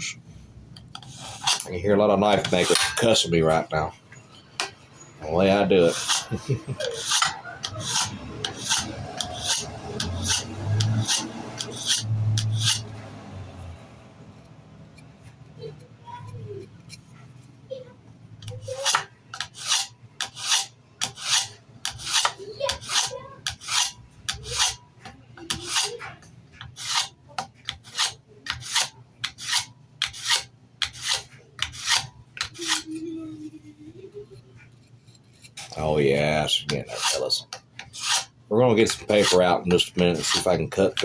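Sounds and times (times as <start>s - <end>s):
knife strokes on sharpener: 1.0s - 1.7s, 5.8s - 12.9s, 18.5s - 24.8s, 25.5s - 33.0s, 36.7s - 41.0s.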